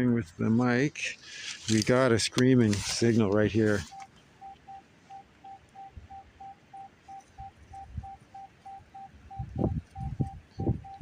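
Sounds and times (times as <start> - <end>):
metal detector beeps: 3.8 - 11.0.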